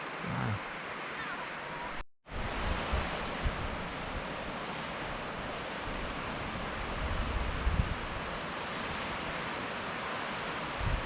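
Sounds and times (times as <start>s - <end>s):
wind on microphone: 1.7s - 4.5s, 5.1s - 8.4s, 10.7s - 11.0s.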